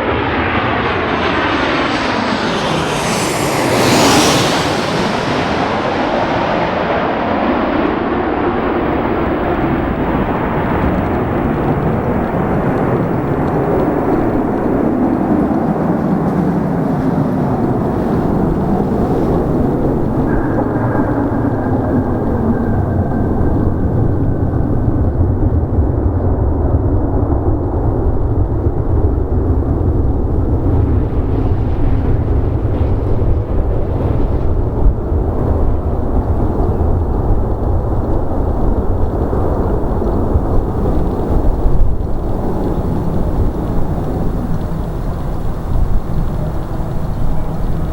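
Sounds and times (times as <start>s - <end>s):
deep low rumble: 0.0s - 6.6s
faint engine whine: 0.0s - 47.9s
jet engine roar: 0.0s - 47.9s.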